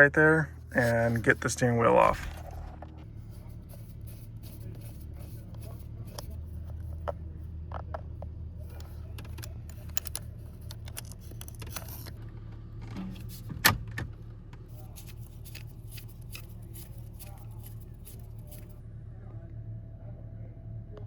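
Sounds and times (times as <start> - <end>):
steady low hum: 0.0 - 21.0
small metallic clicks and knocks: 5.5 - 13.5.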